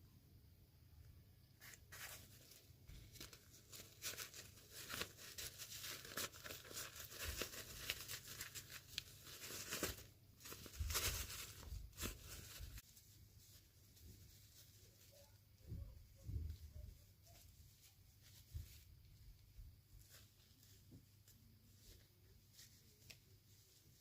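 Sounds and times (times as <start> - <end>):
packaging being torn and crinkled: 3.1 - 12.8.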